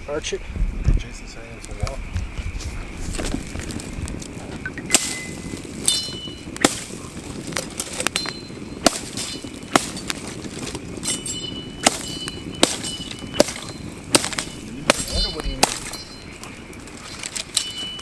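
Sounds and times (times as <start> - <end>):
high metallic ring: 4.8 - 6.5, 8.0 - 10.3, 11.0 - 18.0
hatchet chopping wood: 6.0 - 6.9, 7.8 - 10.4, 11.8 - 16.1.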